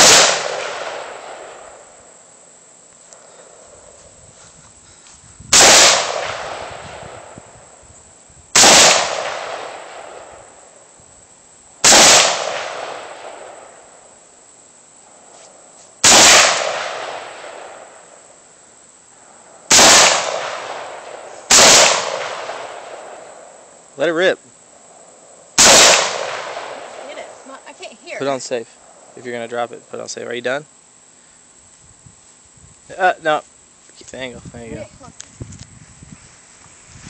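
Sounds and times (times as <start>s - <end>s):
rifle shots echoing: 0.0s - 1.8s, 5.5s - 7.1s, 8.6s - 10.3s, 11.8s - 13.8s, 16.0s - 18.0s, 19.7s - 23.3s, 25.6s - 27.3s.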